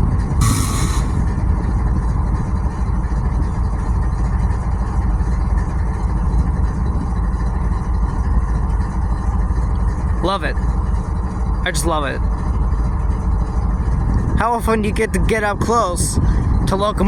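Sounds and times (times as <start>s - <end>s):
locomotive engines idling: 0.0s - 6.2s, 6.9s - 17.0s.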